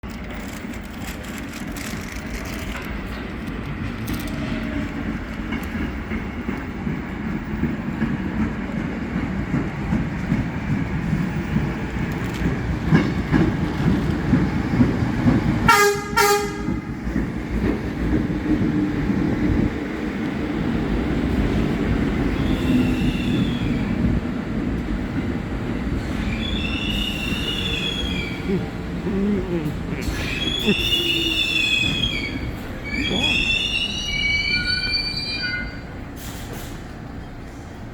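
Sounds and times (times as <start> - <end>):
train wheels rumbling on track: 0.0 - 37.9
train horn blasts: 15.7 - 17.0.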